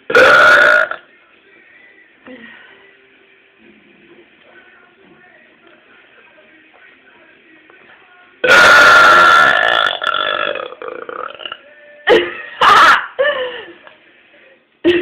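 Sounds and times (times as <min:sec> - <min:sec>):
woman burping loudly: 0:00.1 - 0:01.1, 0:08.4 - 0:11.6, 0:12.2 - 0:13.2.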